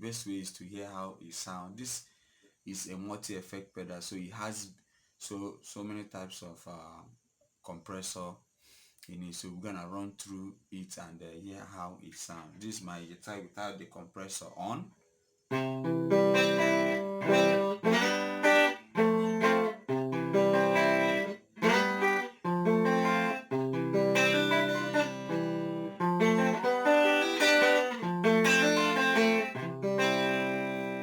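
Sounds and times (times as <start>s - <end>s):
clean guitar chords: 15.5s - 31.0s.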